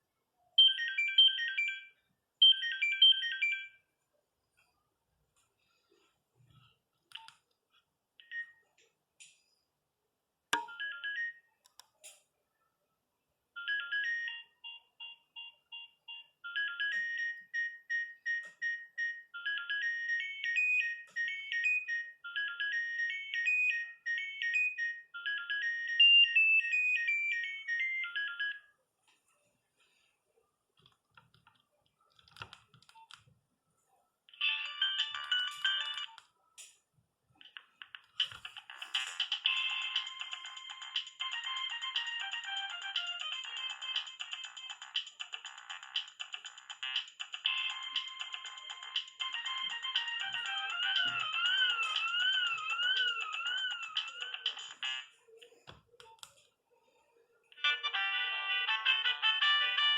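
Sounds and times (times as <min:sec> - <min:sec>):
mobile phone ringtone melody: 0:00.6 - 0:03.8, 0:10.6 - 0:11.6, 0:13.6 - 0:28.8, 0:34.3 - 0:36.2, 0:38.7 - 0:55.1, 0:57.6 - 0:59.9
short clicks and bleeps: 0:07.1 - 0:07.4.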